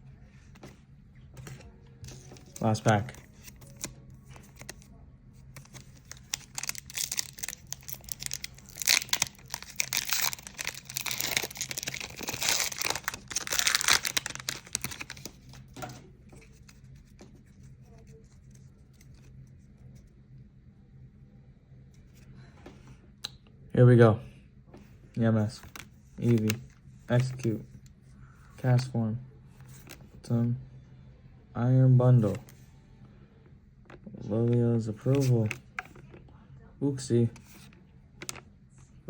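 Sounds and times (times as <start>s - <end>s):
foil wrapper tearing and crinkling: 5.6s - 15.5s.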